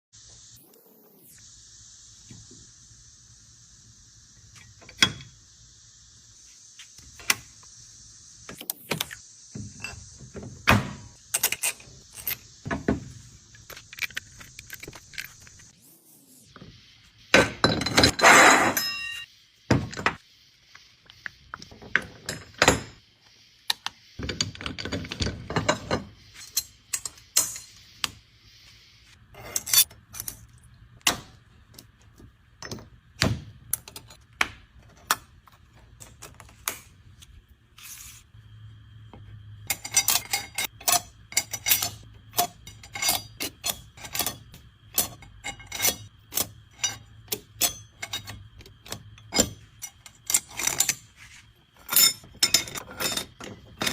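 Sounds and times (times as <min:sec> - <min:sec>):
faint steady hum: 0:00.2 - 0:53.9
metal tools clinking: 0:11.3 - 0:12.5, 0:17.6 - 0:19.2, 0:39.7 - 0:51.2, 0:51.8 - 0:53.9.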